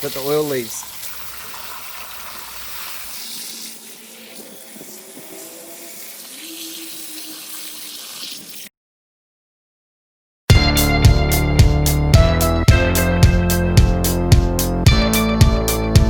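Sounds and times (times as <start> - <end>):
pressure washer water spray hiss: 0.0 - 8.7.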